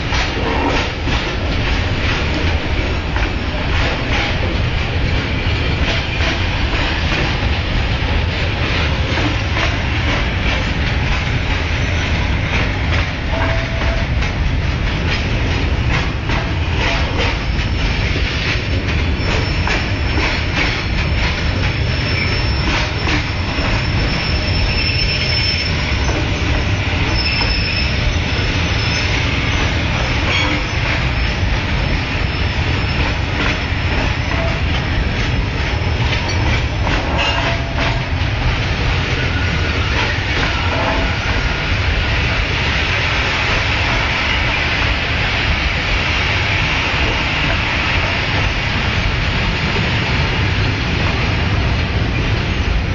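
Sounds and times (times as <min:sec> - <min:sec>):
wheels clicking over rail joints: 0:00.0 - 0:25.0, 0:25.9 - 0:42.4
train wagons rumbling past: 0:00.0 - 0:52.9
faint high wheel squeal: 0:21.9 - 0:29.2.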